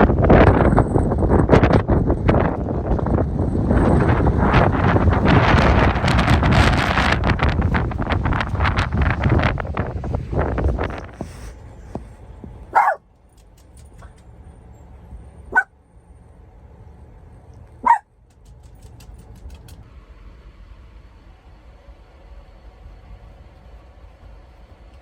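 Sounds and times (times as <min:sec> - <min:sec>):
dog barking: 0:12.7 - 0:13.0, 0:15.5 - 0:15.7, 0:17.8 - 0:18.1.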